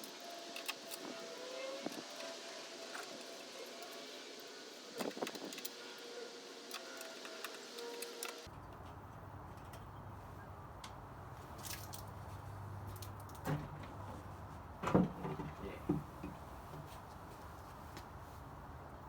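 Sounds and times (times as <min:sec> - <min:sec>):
background hiss: 0:00.0 - 0:08.5.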